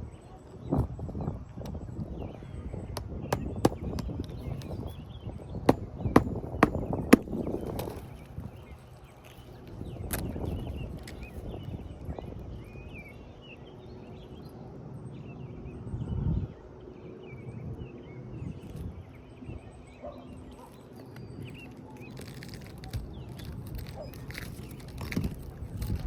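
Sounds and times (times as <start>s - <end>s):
small birds chirping: 0.6s - 15.5s
low constant rumble: 1.4s - 12.7s.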